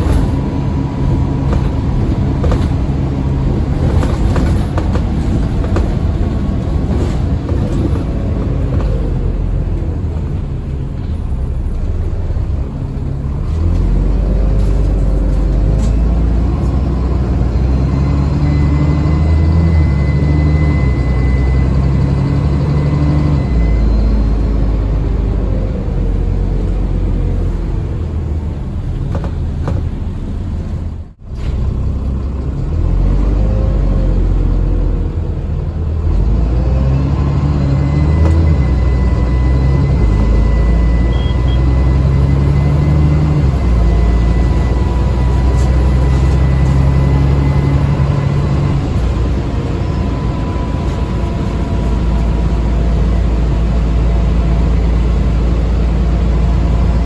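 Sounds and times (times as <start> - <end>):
bus diesel engine running: 0.0 - 57.0
turbocharger whine: 10.9 - 27.4, 36.0 - 57.0.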